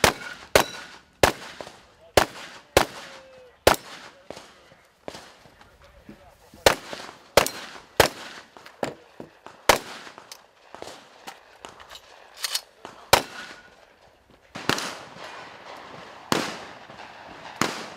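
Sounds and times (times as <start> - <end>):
fireworks bangs: 12.8 - 17.9
fireworks crackling: 12.8 - 17.9.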